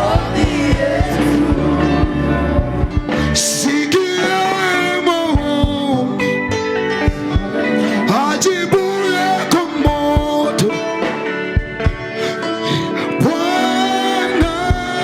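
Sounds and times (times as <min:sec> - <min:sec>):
steady drum beat: 0:00.0 - 0:03.2, 0:05.4 - 0:06.0, 0:07.1 - 0:07.6, 0:09.9 - 0:10.4, 0:11.5 - 0:12.1, 0:14.4 - 0:15.0
sustained chords and guitar: 0:00.0 - 0:15.0
voices singing: 0:00.0 - 0:15.0.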